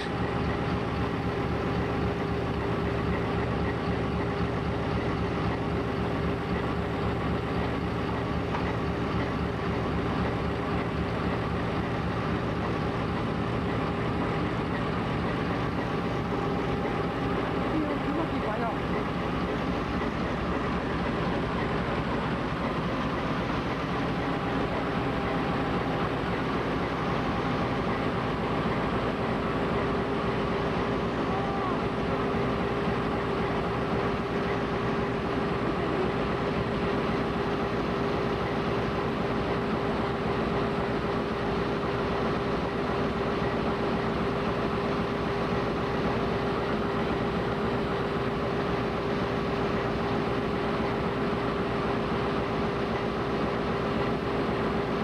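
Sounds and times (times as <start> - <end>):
diesel locomotive engine running: 0.0 - 55.0.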